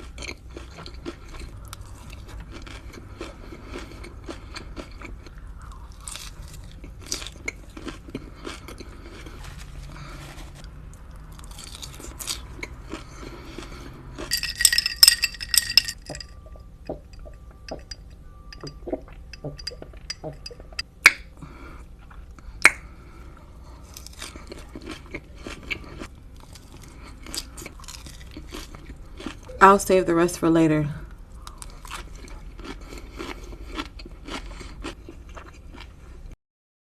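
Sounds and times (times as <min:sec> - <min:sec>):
chewing and crunching food: 0:00.0 - 0:30.0, 0:31.0 - 0:36.4
sharp clinking and rattling: 0:14.2 - 0:20.8.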